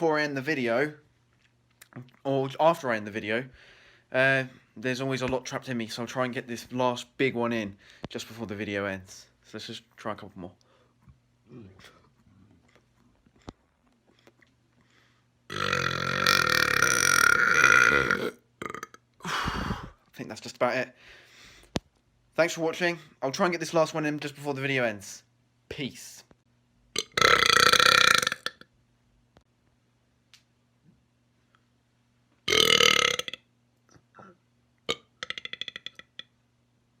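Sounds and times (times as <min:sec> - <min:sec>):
man burping: 0:11.5 - 0:12.0, 0:15.5 - 0:20.0, 0:27.0 - 0:28.6, 0:32.5 - 0:33.4, 0:34.1 - 0:36.2.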